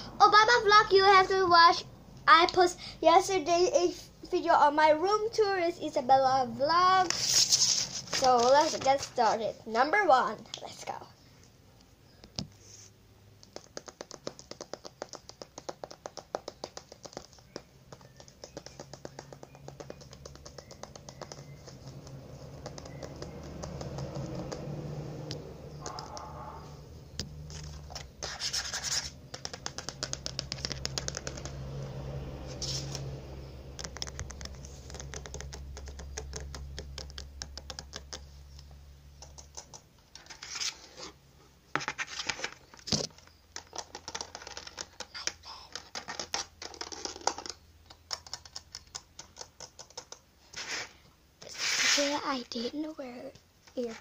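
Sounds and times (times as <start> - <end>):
fingernails tapping and scratching: 13.4 - 24.8, 27.1 - 31.8, 33.7 - 40.8, 41.8 - 50.9.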